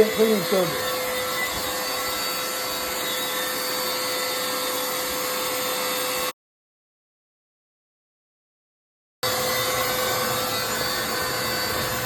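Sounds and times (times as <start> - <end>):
vacuum cleaner running: 0.0 - 6.4, 9.2 - 12.0.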